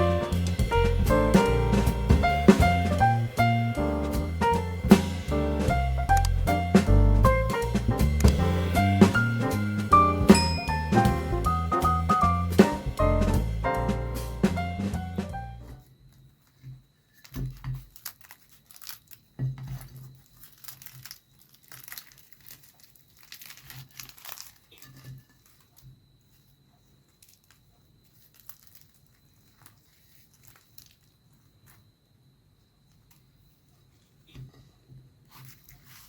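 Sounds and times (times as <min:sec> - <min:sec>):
crackling and tearing by hand: 0:17.1 - 0:25.9, 0:27.2 - 0:31.8.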